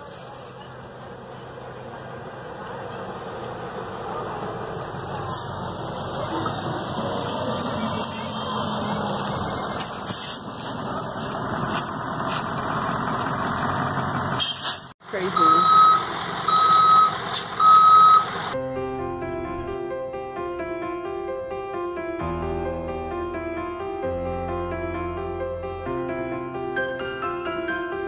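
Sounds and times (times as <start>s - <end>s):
vehicle engine and tyre noise: 0.0s - 19.8s.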